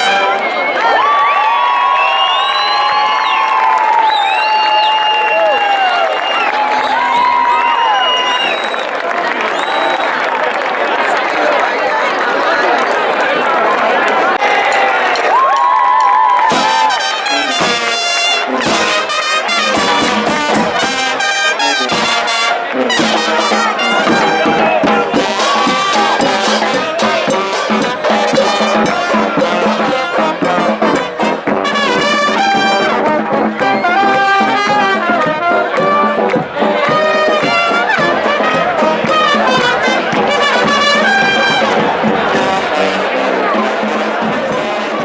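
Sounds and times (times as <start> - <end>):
brass section: 0.0 - 1.2, 16.4 - 45.0
street band playing: 0.0 - 1.4, 14.5 - 45.0.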